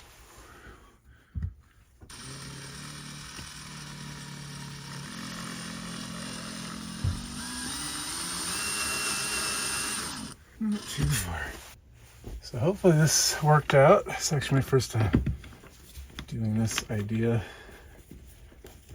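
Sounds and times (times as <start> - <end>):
power drill boring into wood: 2.1 - 11.4.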